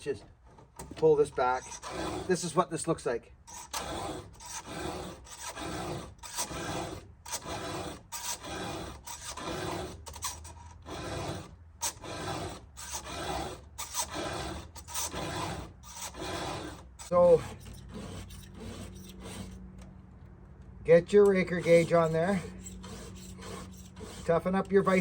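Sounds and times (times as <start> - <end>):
hand file rasping on metal: 1.6 - 2.6, 3.5 - 19.6, 21.2 - 25.0.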